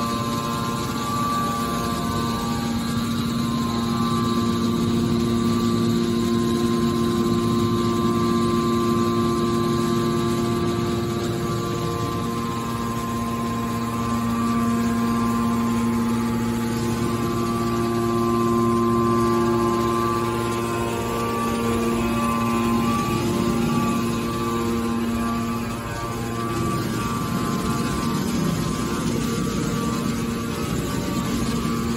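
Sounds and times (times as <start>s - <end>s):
hydraulic baler humming and whining: 0.0s - 31.9s.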